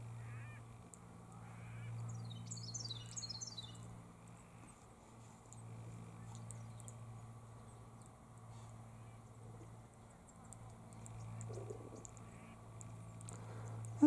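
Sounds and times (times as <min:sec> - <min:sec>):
steady low hum: 0:00.0 - 0:14.0
bird chirping: 0:01.9 - 0:03.9, 0:09.5 - 0:13.7.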